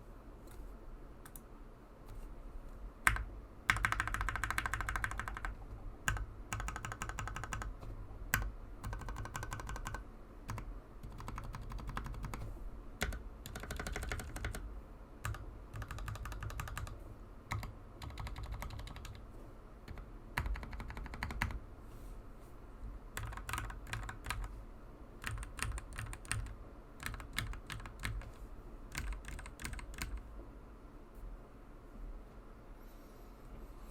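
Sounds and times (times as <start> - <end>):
mechanical keyboard typing: 3.0 - 19.3, 19.9 - 21.6, 23.2 - 24.6, 25.2 - 30.3.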